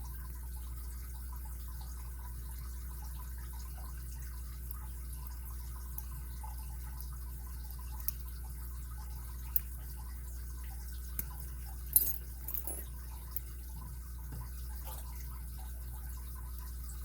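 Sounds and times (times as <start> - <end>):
lock pick ticking and scraping: 11.2 - 13.5.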